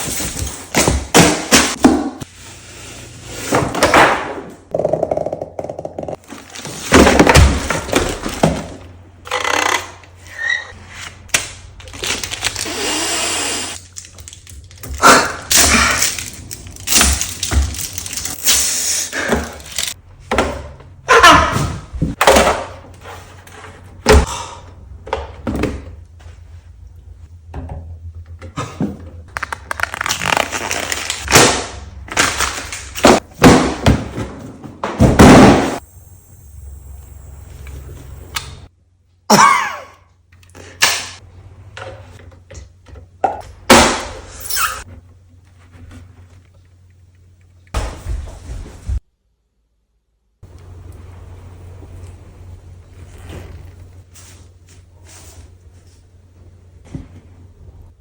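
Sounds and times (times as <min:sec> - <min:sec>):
wrapping rustling: 0:29.4 - 0:31.3.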